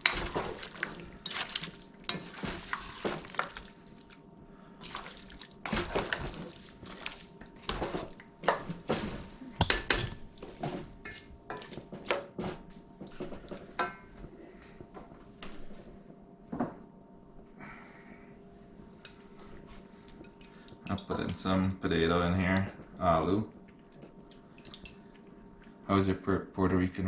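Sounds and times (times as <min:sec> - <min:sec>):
pots and dishes clinking: 0:00.0 - 0:03.6, 0:07.7 - 0:12.5, 0:13.1 - 0:14.2
water running: 0:04.8 - 0:11.1.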